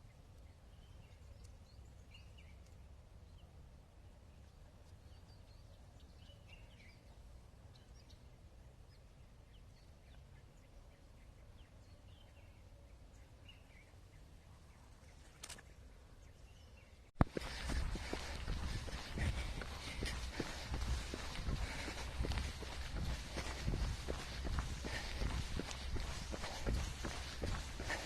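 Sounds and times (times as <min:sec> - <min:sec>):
low steady rumble: 0:17.4 - 0:28.0.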